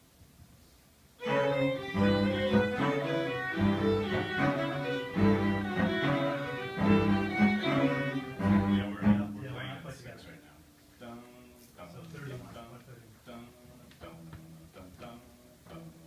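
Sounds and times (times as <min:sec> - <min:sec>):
string quartet playing chords: 0:01.2 - 0:10.7.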